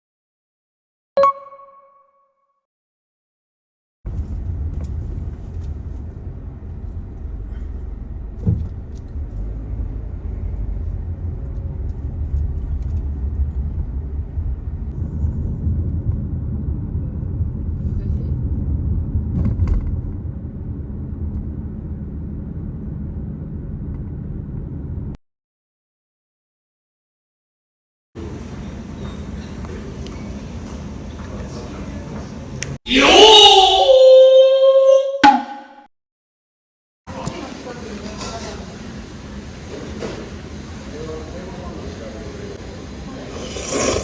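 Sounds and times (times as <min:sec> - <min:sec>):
car rumbling on road: 0:04.1 - 0:25.2.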